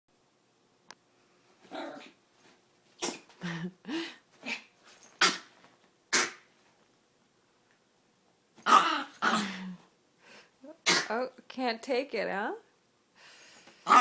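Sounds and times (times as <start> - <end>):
dog grunt: 1.7 - 2.1, 6.1 - 6.4, 8.6 - 9.8
dog sneezing and huffing: 3.0 - 3.6, 4.4 - 6.5, 10.8 - 11.2.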